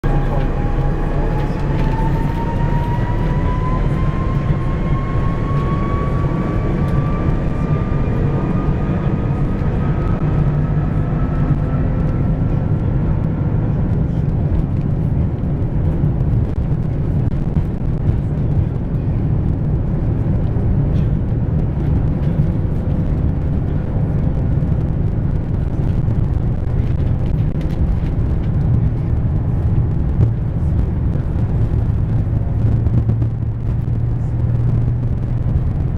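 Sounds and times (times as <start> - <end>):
jet engines spooling up: 0.0 - 14.0.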